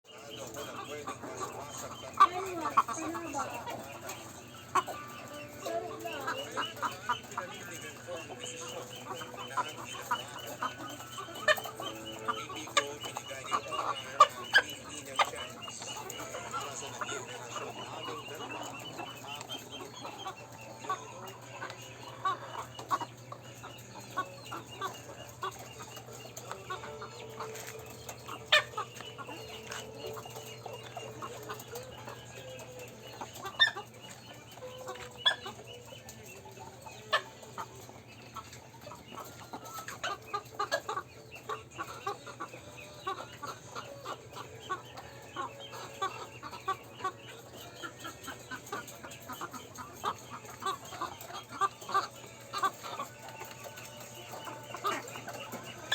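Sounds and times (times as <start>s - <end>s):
chicken clucking: 0.0s - 55.9s.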